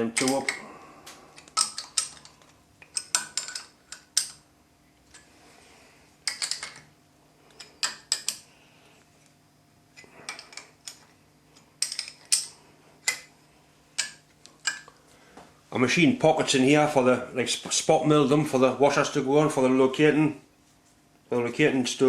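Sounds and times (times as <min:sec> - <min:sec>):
spanner clinking on metal: 0:00.0 - 0:00.6, 0:01.4 - 0:04.4, 0:11.8 - 0:13.3.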